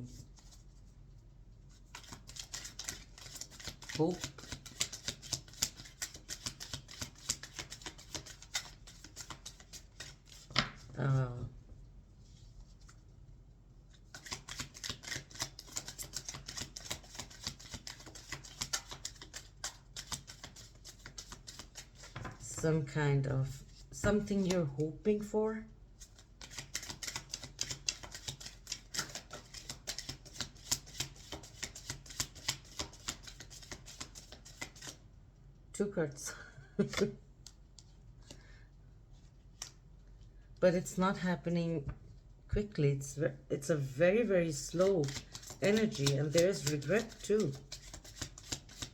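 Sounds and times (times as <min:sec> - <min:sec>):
cards being shuffled: 0:01.9 - 0:10.9, 0:14.0 - 0:22.5, 0:26.0 - 0:35.0, 0:36.8 - 0:37.9, 0:44.7 - 0:48.9.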